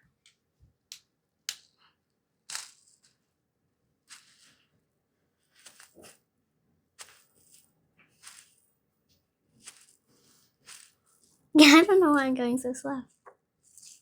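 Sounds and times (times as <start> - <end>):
plastic packet of foam beads: 2.5 - 3.2.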